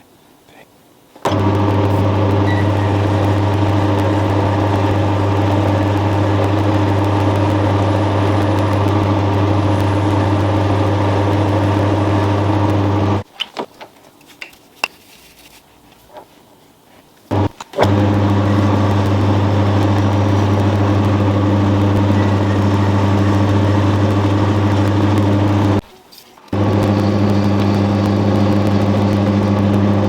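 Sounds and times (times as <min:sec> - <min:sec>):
electric motor humming: 0:01.3 - 0:13.2, 0:17.3 - 0:25.8, 0:26.5 - 0:30.0.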